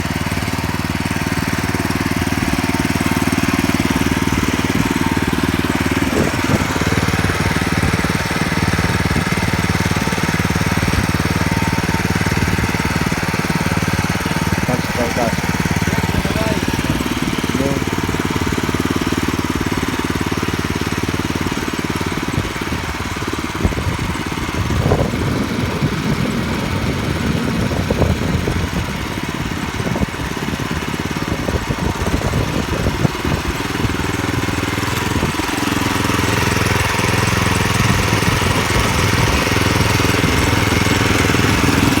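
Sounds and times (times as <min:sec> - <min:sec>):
rotary tiller in soil: 0:00.0 - 0:42.0
tractor engine running: 0:00.0 - 0:42.0.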